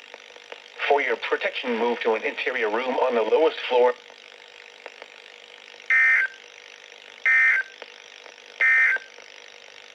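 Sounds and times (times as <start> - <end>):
digital data tone bursts: 5.9 - 6.4, 7.2 - 7.8, 8.6 - 9.1.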